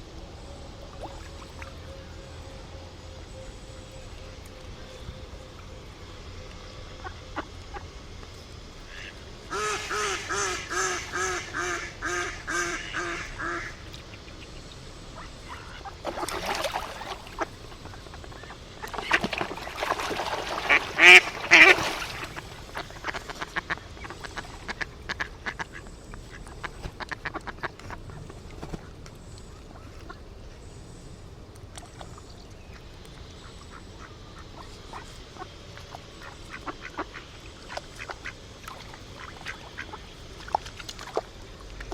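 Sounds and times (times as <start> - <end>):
ducks quacking: 8.9 - 14.5, 15.2 - 28.2.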